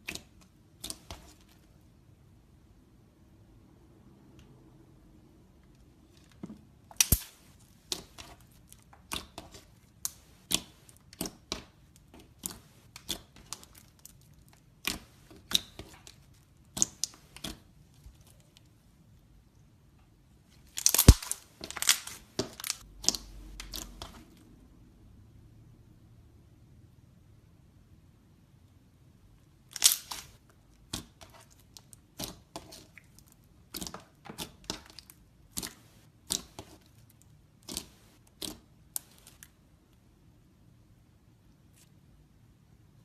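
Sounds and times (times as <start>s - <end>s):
slime crackling pops: 6.9s - 8.3s, 20.8s - 24.2s.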